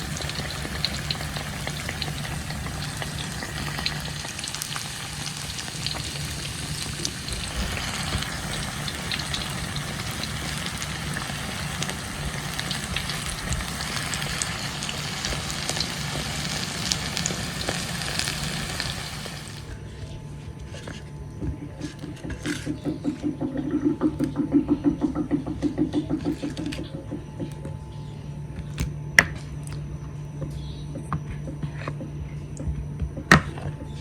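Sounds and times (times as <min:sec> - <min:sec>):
deep-frying sizzle with pops: 0:00.0 - 0:19.8.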